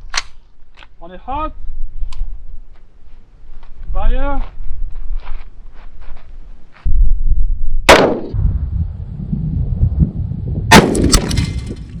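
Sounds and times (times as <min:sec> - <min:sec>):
rifle shots: 0:07.9 - 0:08.4, 0:10.7 - 0:11.8
heavy low rumble: 0:08.3 - 0:12.0.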